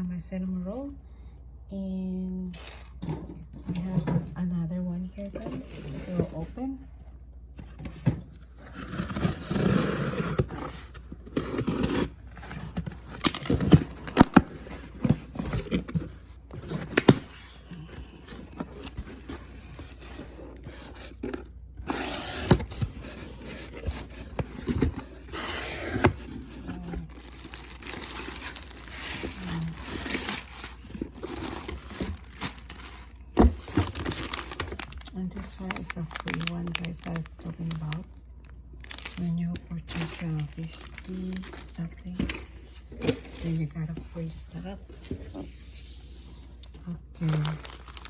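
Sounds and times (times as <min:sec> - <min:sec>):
packaging tearing and crinkling: 0:21.8 - 0:38.1, 0:38.8 - 0:39.2, 0:39.8 - 0:43.4, 0:46.6 - 0:48.0.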